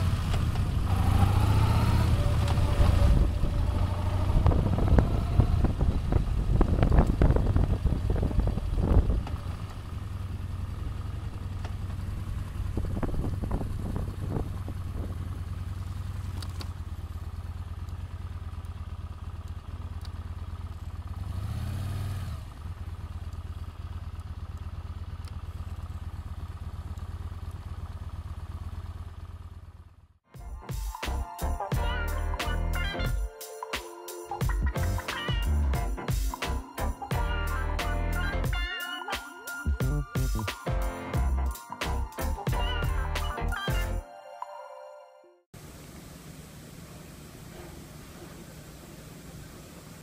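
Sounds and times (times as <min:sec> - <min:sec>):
motorcycle engine droning: 0:00.0 - 0:30.2.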